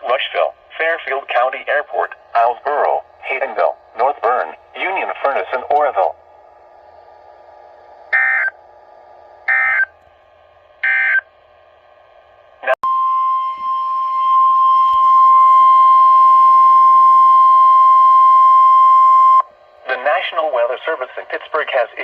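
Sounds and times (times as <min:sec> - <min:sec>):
steady alarm tone: 0:07.9 - 0:08.6, 0:09.4 - 0:10.0, 0:10.8 - 0:11.3, 0:12.6 - 0:21.3.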